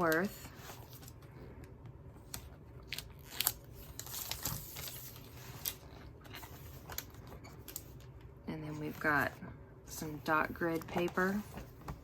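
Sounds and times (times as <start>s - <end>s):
papers rustling and crinkling: 2.2s - 9.3s.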